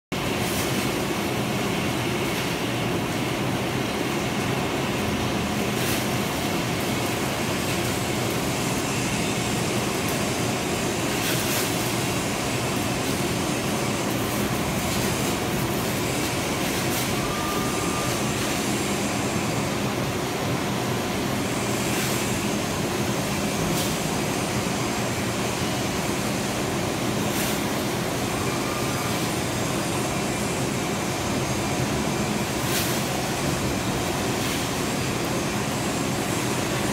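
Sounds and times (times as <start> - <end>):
machine tool drone: 0.2 - 27.1.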